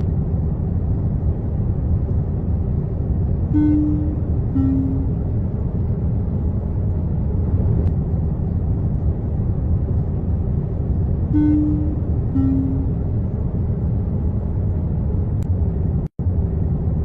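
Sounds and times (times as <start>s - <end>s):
jet airliner rumble: 0.0s - 17.0s
two-note falling tone: 3.6s - 5.2s, 11.4s - 13.0s.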